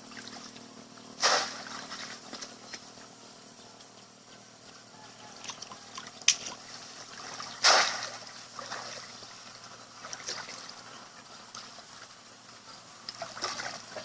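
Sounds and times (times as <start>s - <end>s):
water trickling and splashing: 0.0s - 3.2s, 5.0s - 14.0s
small water drips: 3.8s - 14.0s.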